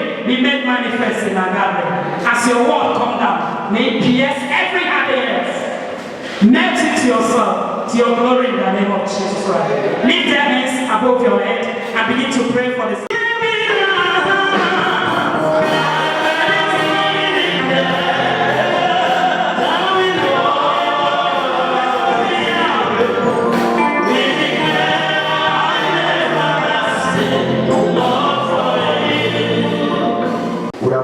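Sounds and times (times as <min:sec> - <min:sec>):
gospel choir singing: 0:13.6 - 0:30.8.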